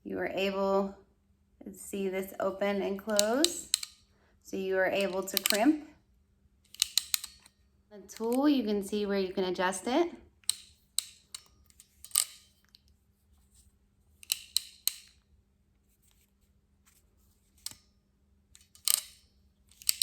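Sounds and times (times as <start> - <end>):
crimping tool ratchet clicks: 3.1 - 4.0, 5.0 - 5.7, 6.7 - 7.5, 10.4 - 12.8, 14.2 - 15.2, 17.6 - 17.8, 18.6 - 20.0.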